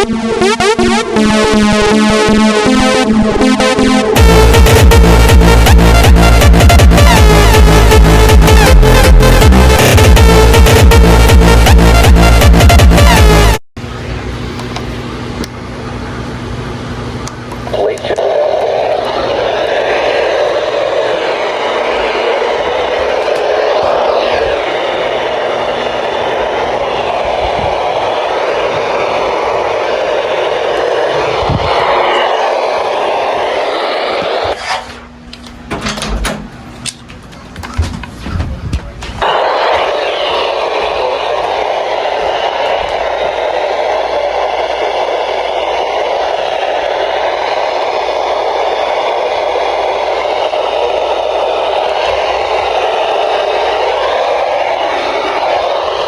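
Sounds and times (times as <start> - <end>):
loud vehicle noise: 17.7 - 34.6, 39.2 - 56.0
radio static hiss: 17.7 - 34.6, 39.2 - 56.0.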